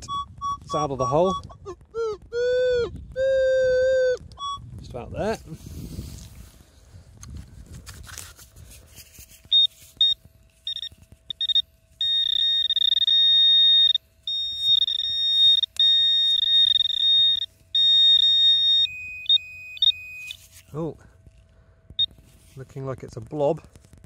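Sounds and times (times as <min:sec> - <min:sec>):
metal detector pinpointer beeping: 0:00.0 - 0:01.8, 0:02.4 - 0:04.7, 0:09.5 - 0:20.8.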